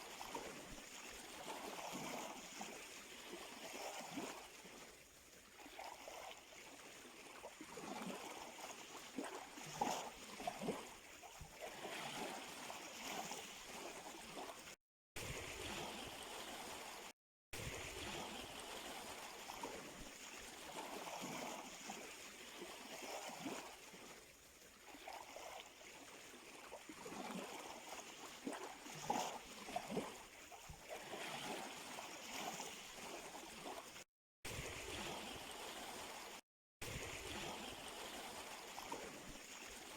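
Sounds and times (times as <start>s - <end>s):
waves washing on shore: 15.2s - 24.2s, 30.9s - 39.9s.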